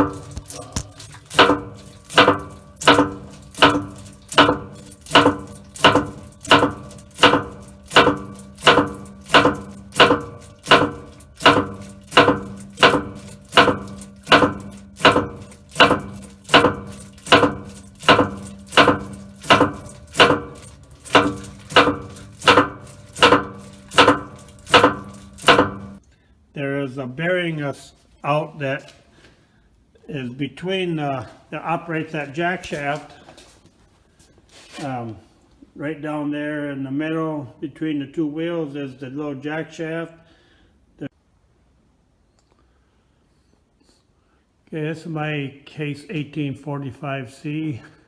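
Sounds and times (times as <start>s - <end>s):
metallic clunks with ring: 0.0s - 26.0s.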